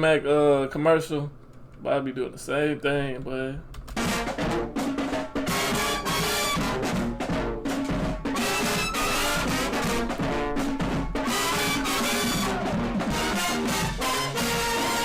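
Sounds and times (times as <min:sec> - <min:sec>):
brass music with drums: 0:04.0 - 0:15.0.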